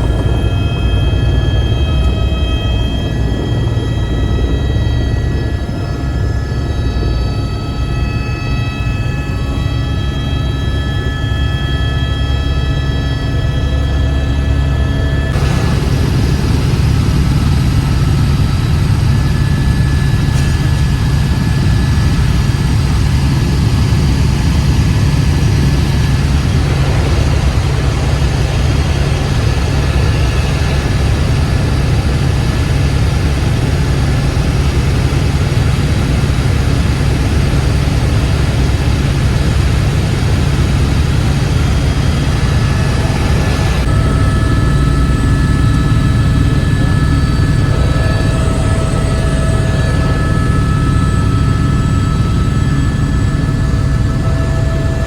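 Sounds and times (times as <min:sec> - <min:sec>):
high whining tones: 0:00.0 - 0:35.1
helicopter engine and rotor drone: 0:00.0 - 0:55.0.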